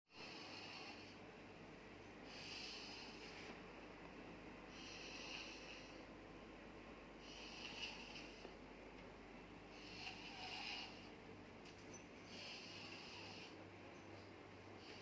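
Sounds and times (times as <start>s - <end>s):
person snoring: 9.7s - 11.1s.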